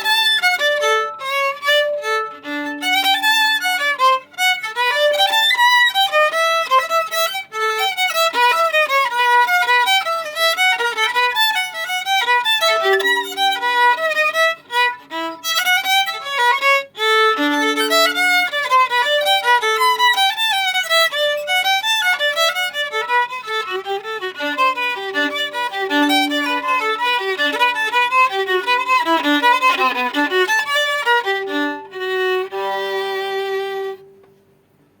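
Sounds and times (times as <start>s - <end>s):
solo violin playing: 0.0s - 34.6s.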